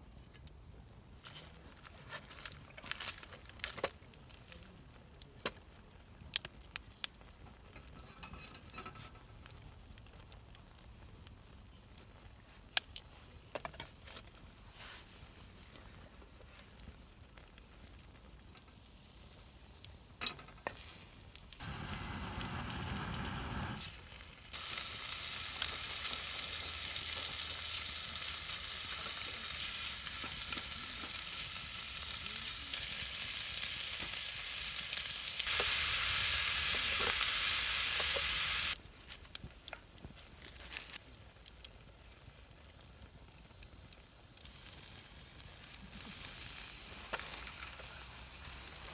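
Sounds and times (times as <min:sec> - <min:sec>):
food sizzling in a pan: 0:20.7 - 0:38.8, 0:44.5 - 0:48.9.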